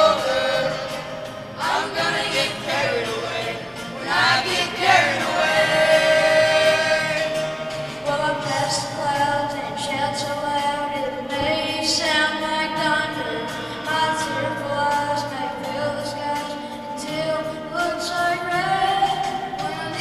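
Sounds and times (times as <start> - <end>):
school choir singing in harmony: 0.0 - 7.6.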